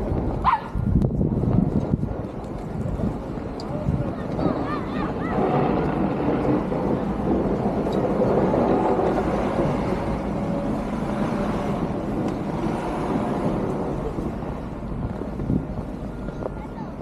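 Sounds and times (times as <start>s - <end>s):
motor vehicle running: 0.0s - 17.0s.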